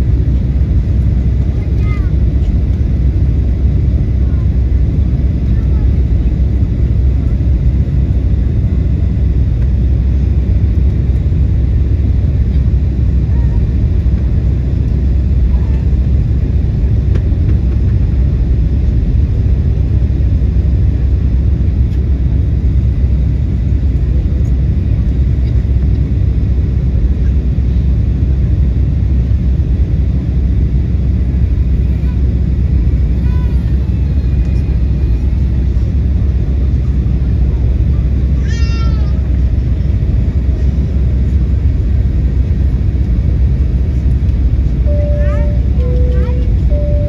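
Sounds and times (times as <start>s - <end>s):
airliner cabin rumble: 0.0s - 47.0s.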